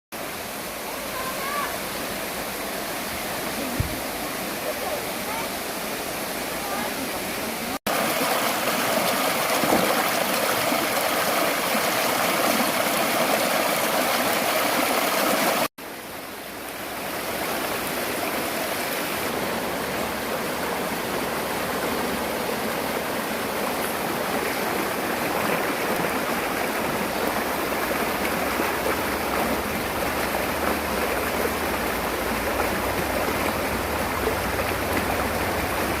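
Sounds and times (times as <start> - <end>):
stream water rushing over rocks: 0.1 - 36.0.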